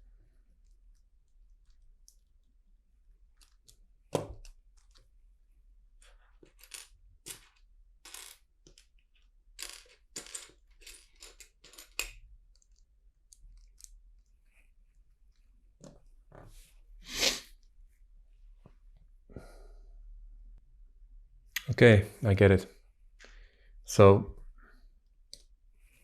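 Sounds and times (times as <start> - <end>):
plastic bricks clicking and clattering: 3.3 - 5.1, 6.0 - 14.3.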